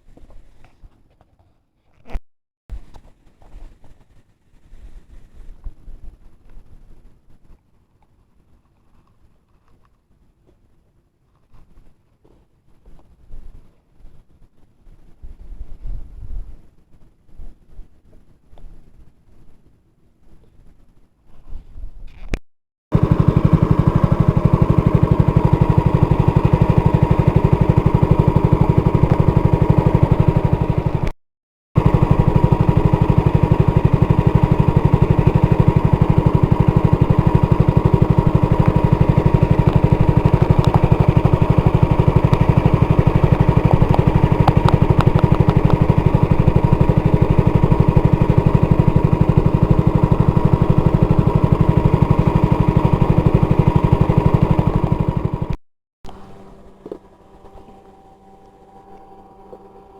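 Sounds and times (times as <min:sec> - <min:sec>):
small engine running: 0:22.9 - 0:31.2, 0:31.8 - 0:59.9.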